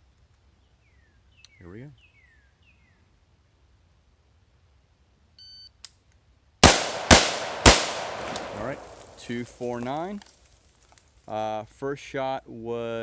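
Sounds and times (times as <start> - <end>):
rifle shots with echo: 6.6 - 9.9.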